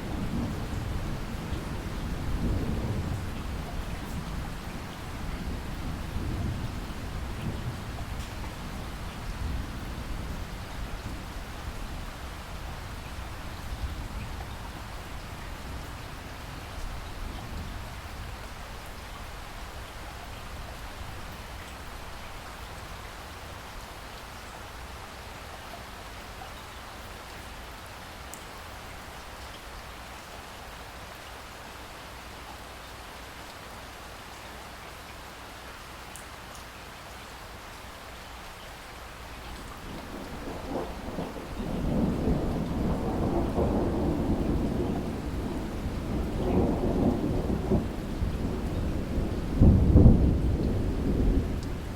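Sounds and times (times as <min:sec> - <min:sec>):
steady rain: 0:00.0 - 0:51.9
thunder rumbling: 0:39.6 - 0:51.9.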